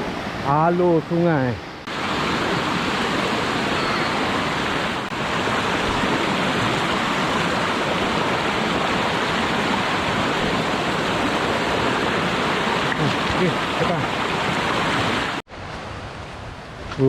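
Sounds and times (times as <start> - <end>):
river rushing: 0.0 - 16.5.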